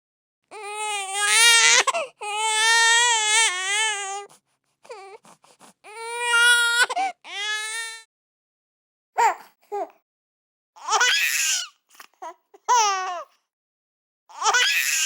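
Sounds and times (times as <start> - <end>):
infant crying: 0.5 - 4.3, 4.9 - 8.1, 10.8 - 13.3, 14.3 - 15.0
infant whimpering: 0.5 - 8.0.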